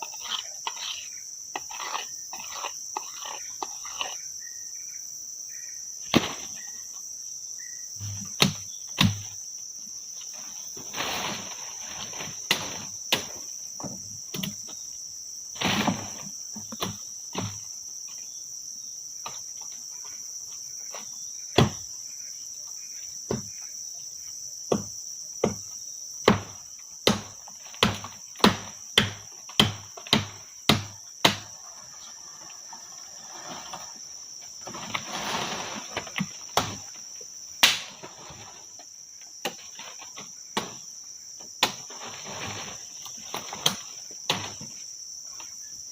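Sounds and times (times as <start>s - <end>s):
insects chirring: 0.0s - 45.9s
chopping or hammering strikes: 8.0s - 9.4s, 21.6s - 21.8s, 26.2s - 31.5s, 37.6s - 37.9s.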